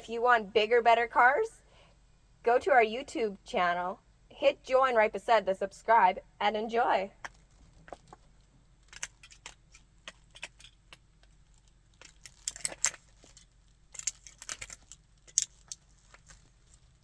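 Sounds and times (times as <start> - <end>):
model car cracking under shoe: 7.2 - 16.5.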